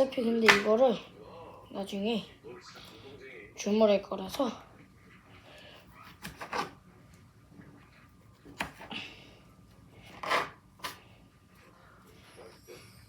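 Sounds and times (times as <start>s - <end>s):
knife cutting strawberries: 6.0s - 6.8s, 8.3s - 9.0s, 10.0s - 11.0s.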